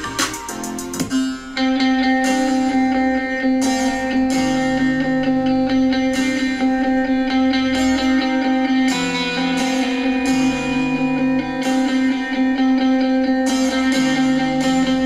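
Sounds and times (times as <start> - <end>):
guitar music through small speaker: 0.0 - 15.0.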